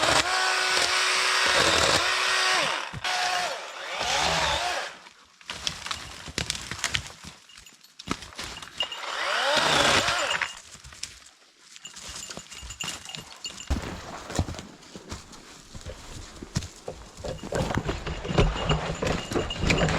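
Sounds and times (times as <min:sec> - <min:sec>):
electric chainsaw cutting wood: 0:00.0 - 0:05.0, 0:08.9 - 0:10.6.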